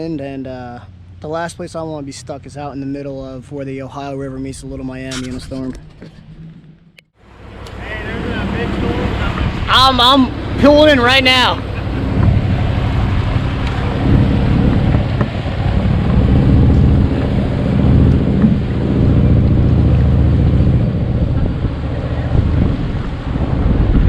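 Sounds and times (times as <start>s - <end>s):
wind buffeting microphone: 1.7s - 24.0s.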